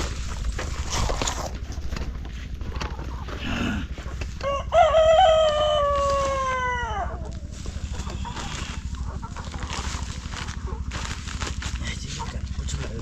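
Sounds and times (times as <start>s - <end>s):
rooster crowing: 4.4s - 7.3s.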